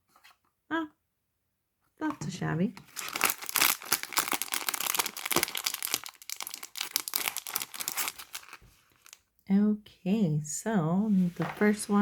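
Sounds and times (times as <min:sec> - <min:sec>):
crinkly packaging crackling: 0:02.7 - 0:09.3.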